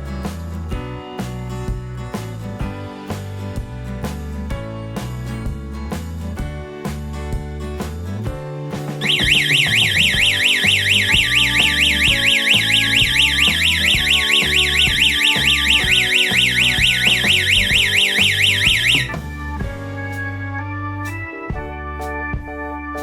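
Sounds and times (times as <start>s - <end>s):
warbling security alarm siren: 9.0s - 19.2s.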